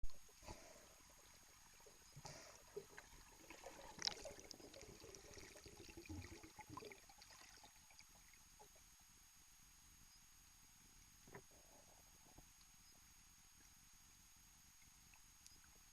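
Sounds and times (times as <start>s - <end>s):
muffled underwater clicks and scrapes: 0.1s - 6.9s, 11.0s - 13.0s
underwater gurgles: 0.1s - 8.9s.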